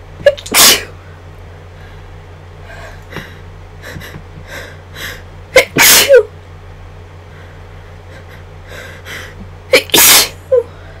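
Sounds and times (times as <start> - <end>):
person sneezing: 0.3 - 0.9, 5.6 - 6.3, 9.7 - 10.7.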